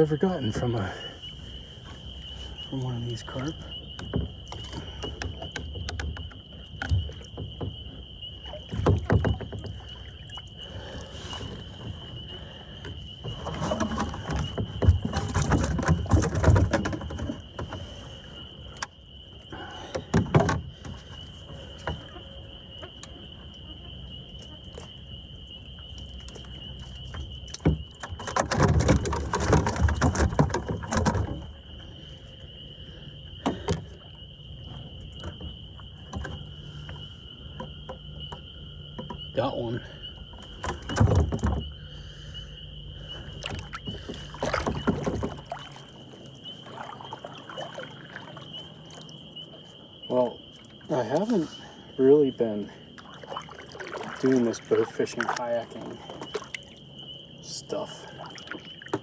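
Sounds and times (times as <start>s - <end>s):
insect trill: 0.0s - 59.0s
fish thrashing and splashing: 26.2s - 32.4s, 43.0s - 49.6s, 52.2s - 59.0s.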